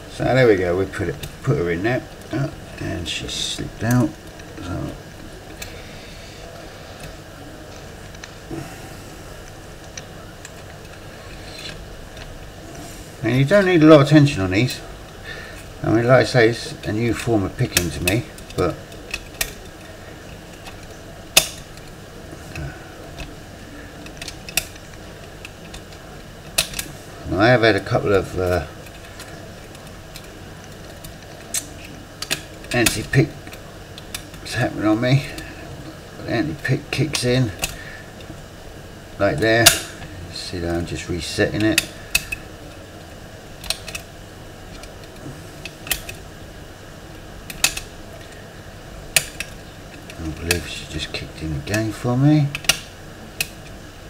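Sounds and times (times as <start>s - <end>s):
lock pick metallic clicks: 20.5s - 21.9s, 24.0s - 26.9s, 28.8s - 34.4s, 39.6s - 40.1s, 41.6s - 42.5s, 43.6s - 44.1s, 44.7s - 46.2s, 47.4s - 48.0s, 49.1s - 50.2s, 52.5s - 53.8s
metallic lock lever clicks: 39.6s - 40.0s, 47.5s - 47.9s, 52.5s - 53.7s.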